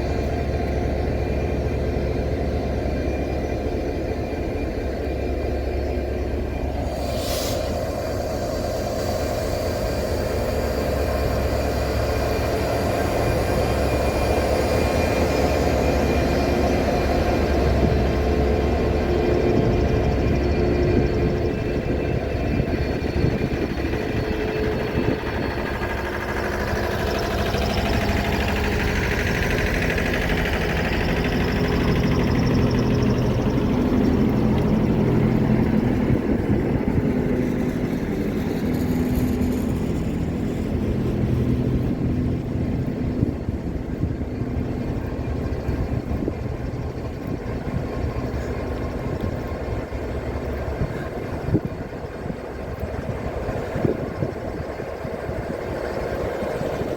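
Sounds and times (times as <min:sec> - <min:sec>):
diesel locomotive idling: 0:00.0 - 0:56.9
broad hiss: 0:06.8 - 0:11.0.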